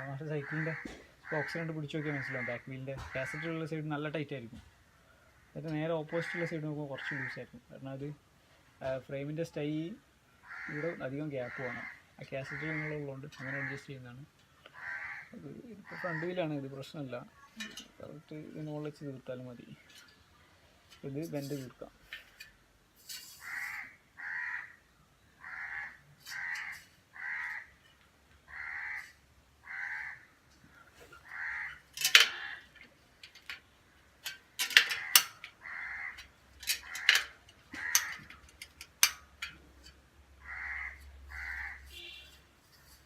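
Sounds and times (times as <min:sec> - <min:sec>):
crow cawing: 0:00.1 - 0:03.7, 0:05.1 - 0:07.5, 0:10.4 - 0:14.0, 0:14.6 - 0:16.6, 0:23.4 - 0:32.9, 0:34.2 - 0:38.5, 0:40.4 - 0:42.2
clicks and knocks on bicycle wheel: 0:31.7 - 0:40.0.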